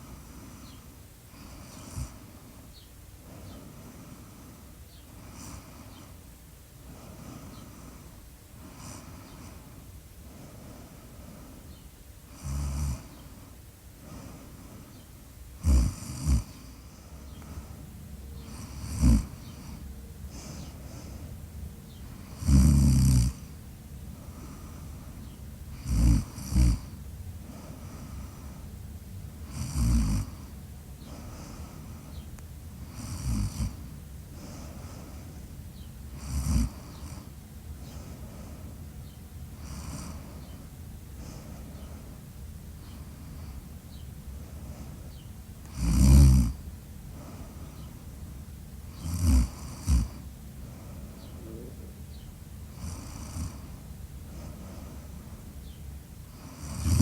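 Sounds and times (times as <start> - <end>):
person snoring: 12.4 - 13.1, 15.6 - 16.5, 18.5 - 19.4, 22.3 - 23.4, 25.8 - 26.9, 29.5 - 30.4, 32.9 - 33.8, 36.2 - 37.3, 45.7 - 46.6, 49.0 - 50.2, 52.7 - 53.6, 56.4 - 57.0.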